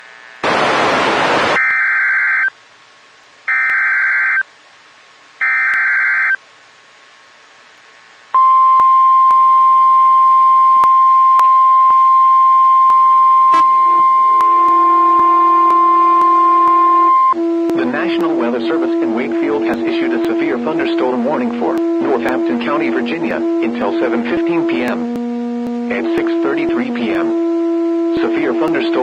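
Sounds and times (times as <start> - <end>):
burst of static: 0.0 - 2.5, 12.9 - 27.4, 28.0 - 29.0
warbling data tone bursts: 5.4 - 6.4, 10.6 - 29.0
steady attention tone: 8.4 - 29.0
low droning tone: 12.7 - 29.0.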